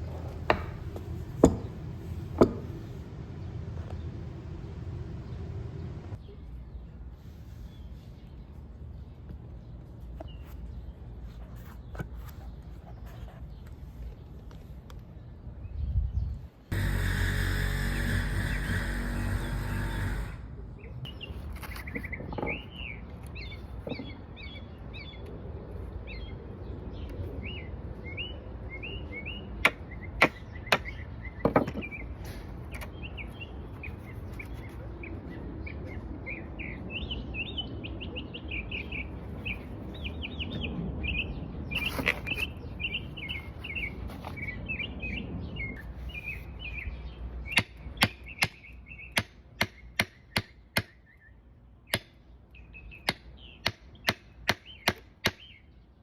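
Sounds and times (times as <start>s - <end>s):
small birds chirping: 0.0s - 56.0s
sharp knocks: 0.3s - 1.8s.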